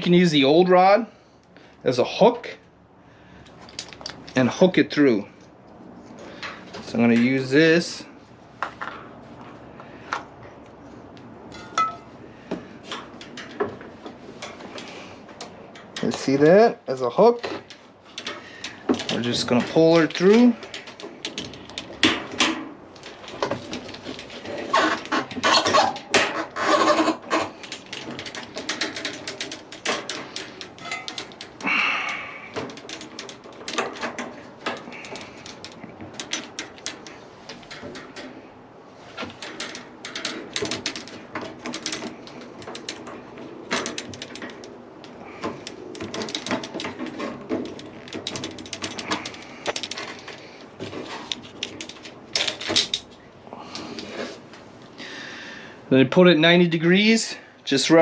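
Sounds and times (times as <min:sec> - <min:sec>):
metal clicks and knocks: 0:11.1 - 0:12.1, 0:17.2 - 0:38.4, 0:39.1 - 0:53.2.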